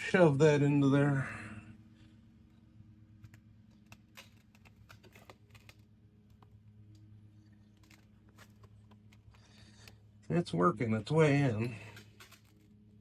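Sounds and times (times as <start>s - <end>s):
low steady hum: 0.0s - 13.0s
small clicks and taps: 2.4s - 10.1s.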